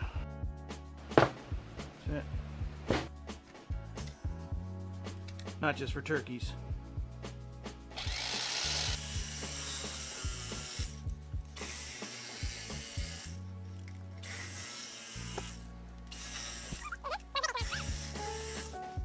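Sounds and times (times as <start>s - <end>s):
electric carving knife buzzing: 8.0s - 13.4s, 14.2s - 18.8s.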